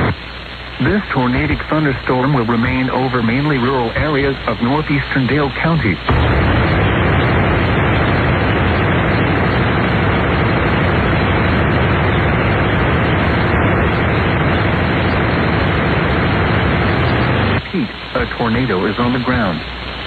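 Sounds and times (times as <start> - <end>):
radio static hiss: 0.0 - 20.0.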